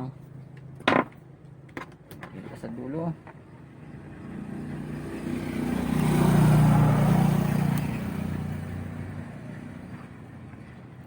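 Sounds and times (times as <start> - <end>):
vehicle engine passing by: 3.6 - 11.0.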